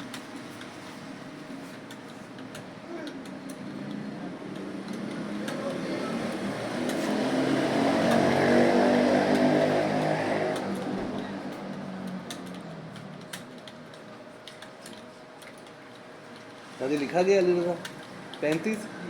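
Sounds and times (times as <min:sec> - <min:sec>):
vehicle passing: 0:05.2 - 0:11.3
keyboard typing: 0:09.3 - 0:18.8.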